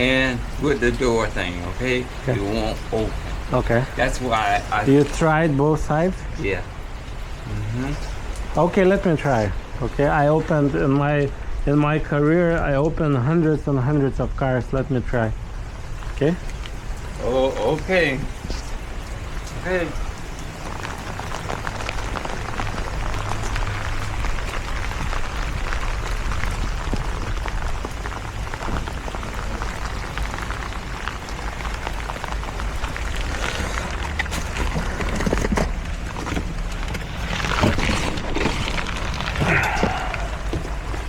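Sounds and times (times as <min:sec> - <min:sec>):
dense patter of noise: 0:00.0 - 0:41.0
knocks and scrapes: 0:33.1 - 0:41.0.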